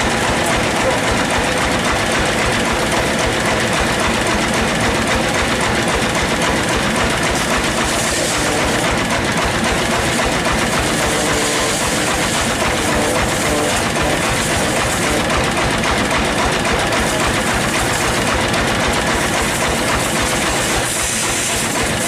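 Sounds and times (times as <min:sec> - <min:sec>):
rapid mechanical clatter: 0:00.0 - 0:22.0
sawmill machinery running: 0:00.0 - 0:22.0.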